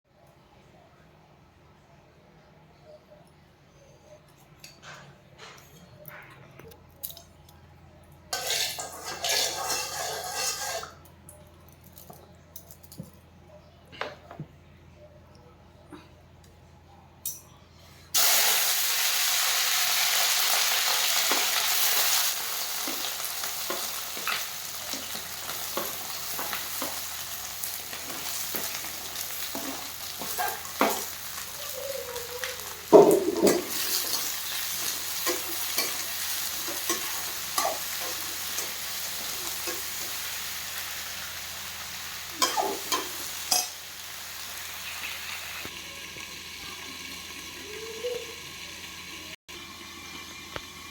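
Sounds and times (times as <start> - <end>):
food sizzling in hot oil: 8.3 - 11.0, 18.2 - 50.9
spoon clinking and scraping pan: 8.3 - 11.0, 32.9 - 40.2, 42.4 - 43.9.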